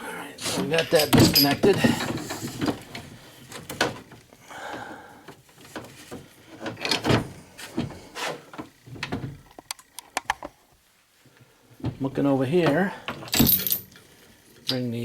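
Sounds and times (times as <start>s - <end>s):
refrigerator parts clunking and scraping: 0.4s - 9.6s.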